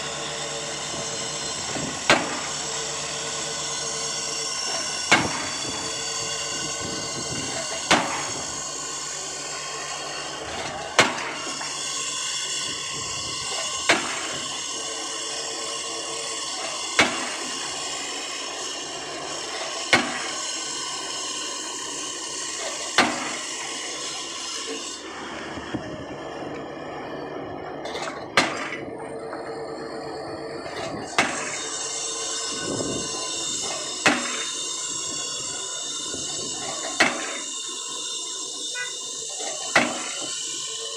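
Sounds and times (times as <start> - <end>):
steady machinery noise: 0.0 - 40.9
pile hammer blows: 1.0 - 2.6, 4.6 - 5.8, 7.0 - 8.6, 9.6 - 11.9, 13.4 - 14.6, 16.5 - 18.8, 19.4 - 20.9, 22.6 - 23.7, 27.9 - 28.9, 30.7 - 35.4, 36.5 - 37.6, 38.7 - 40.5.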